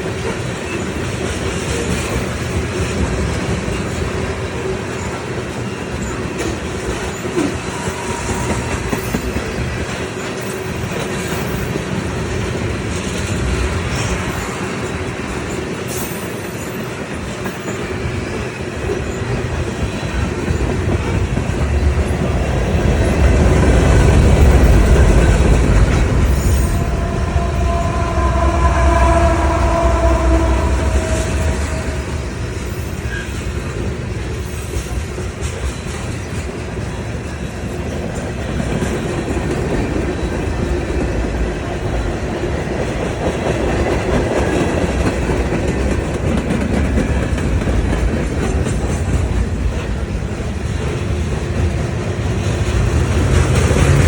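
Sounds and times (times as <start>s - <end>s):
train wheels clattering on track: 0.0s - 54.0s
heavy low rumble: 21.6s - 33.3s
steady high tones: 22.9s - 33.7s.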